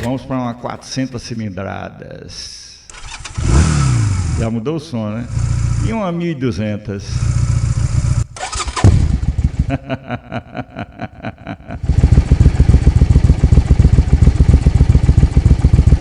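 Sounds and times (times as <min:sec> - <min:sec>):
motorcycle engine starting and idling: 0:00.0 - 0:01.5, 0:02.9 - 0:16.0
engine cutting off: 0:02.9 - 0:06.3, 0:07.0 - 0:16.0.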